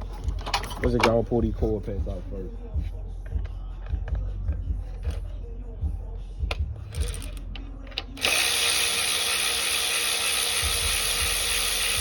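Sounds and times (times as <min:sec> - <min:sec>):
power ratchet spinning: 0:06.8 - 0:12.0.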